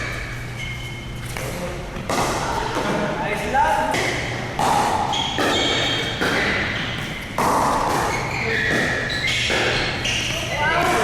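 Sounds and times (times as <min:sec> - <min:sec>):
paddles hitting plastic ball: 0:03.8 - 0:11.0.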